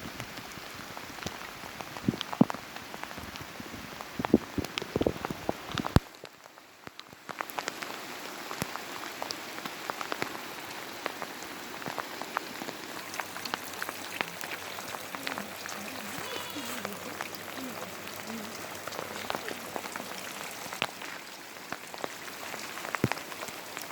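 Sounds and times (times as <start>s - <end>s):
hailstones ticking: 0.1s - 23.9s
rain hissing: 7.6s - 23.9s.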